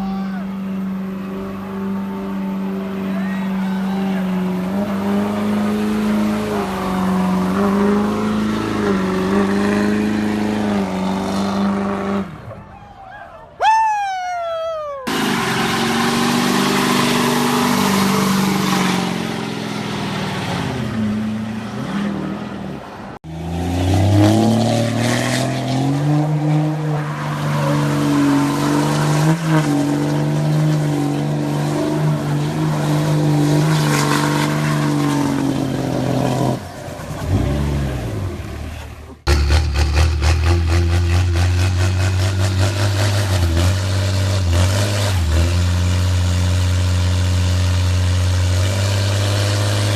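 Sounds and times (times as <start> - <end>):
diesel truck engines revving: 0.0 - 49.9
tires spinning hiss: 15.1 - 20.9.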